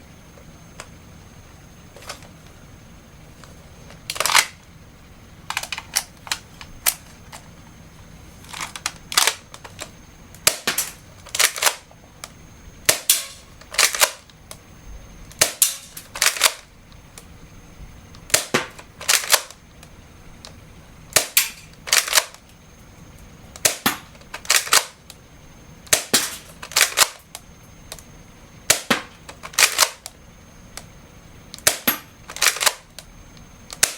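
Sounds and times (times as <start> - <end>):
grenade launcher mechanism clacks: 3.9 - 4.6, 5.5 - 7.4, 8.4 - 11.9, 12.9 - 14.2, 15.4 - 16.6, 18.3 - 19.6, 21.1 - 22.4, 23.6 - 25.0, 25.9 - 27.2, 28.7 - 30.1, 31.6 - 32.9.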